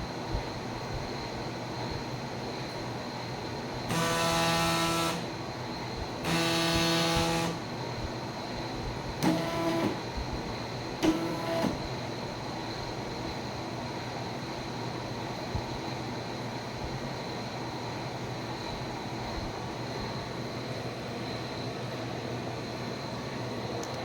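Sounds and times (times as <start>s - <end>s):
fan-like hiss: 0.0s - 24.0s
stepper motor whine: 3.8s - 12.1s.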